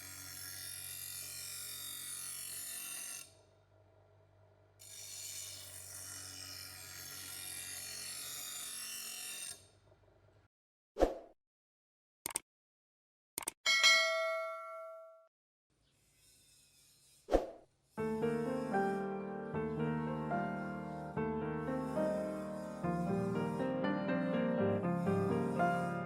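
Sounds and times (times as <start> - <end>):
abrasive rasping on metal: 15.8 - 26.0
power tool motor hum: 18.0 - 26.0.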